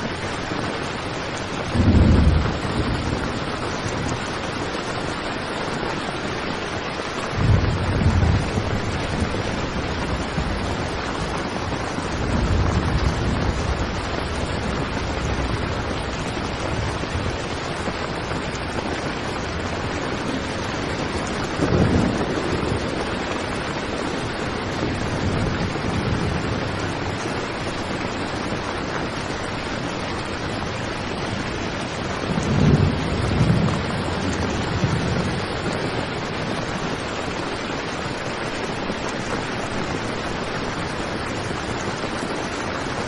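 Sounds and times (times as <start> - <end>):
heavy rain drumming on tent: 0.0 - 43.0.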